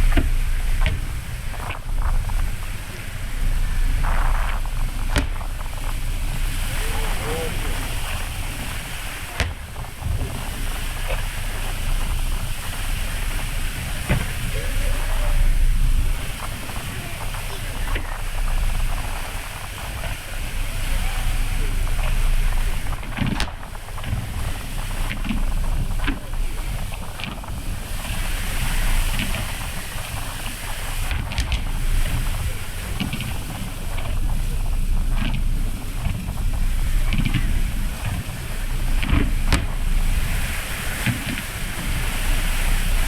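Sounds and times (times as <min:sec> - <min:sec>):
boat under way: 0:00.0 - 0:43.0
water noise: 0:00.0 - 0:43.0
wind rumble on microphone: 0:00.0 - 0:43.0.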